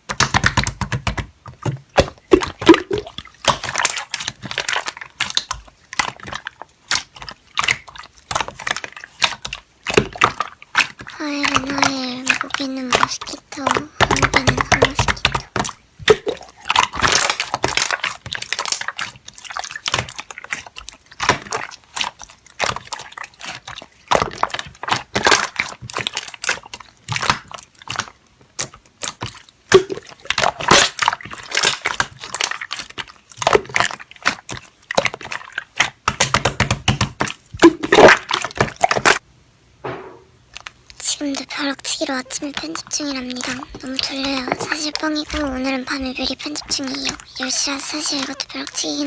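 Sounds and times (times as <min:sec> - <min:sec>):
slime squished by hand: 0:00.0 - 0:39.2.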